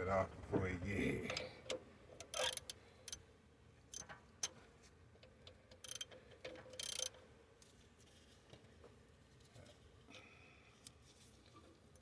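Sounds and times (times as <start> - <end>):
socket ratchet clicking: 2.2 - 2.8, 6.7 - 7.1.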